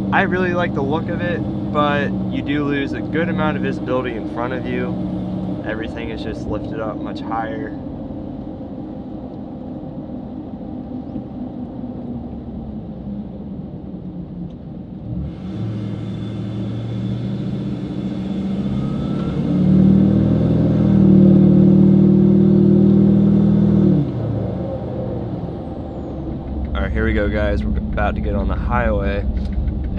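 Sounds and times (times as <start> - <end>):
diesel truck exhaust: 0.0 - 8.4, 15.1 - 29.9.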